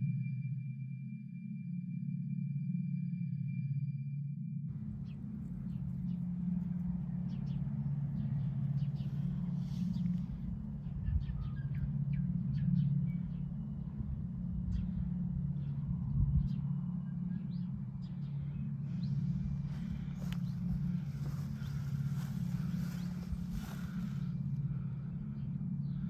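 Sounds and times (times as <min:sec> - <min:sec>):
steady low rumble: 0:04.3 - 0:26.0
birds chirping: 0:04.7 - 0:14.0, 0:16.4 - 0:26.0.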